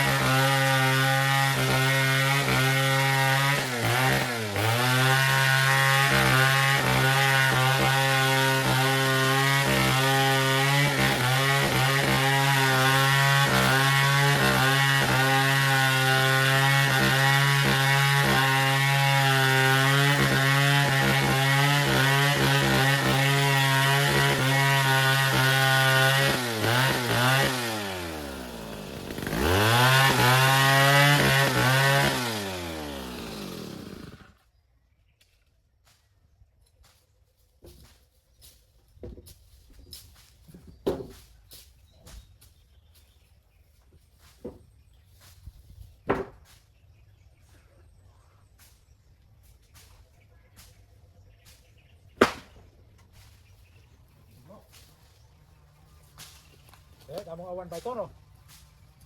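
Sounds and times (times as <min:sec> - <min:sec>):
chainsaw cutting wood: 0:00.0 - 0:34.5, 0:46.0 - 0:46.7, 0:51.5 - 0:53.9, 0:56.0 - 0:59.0.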